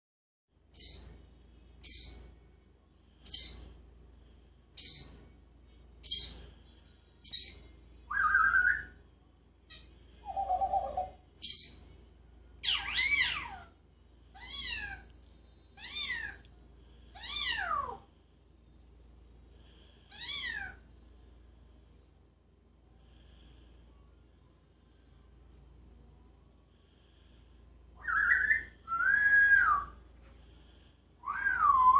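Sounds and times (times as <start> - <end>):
parrot calling: 7.3 - 8.9, 12.6 - 13.7, 14.3 - 15.1, 15.8 - 16.4, 17.1 - 18.0, 20.1 - 20.8, 28.0 - 30.0, 31.2 - 31.9.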